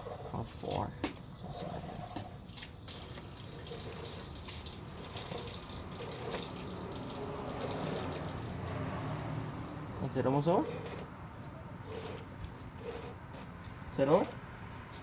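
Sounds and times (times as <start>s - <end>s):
fluid trickling into fill hole: 1.4s - 8.7s.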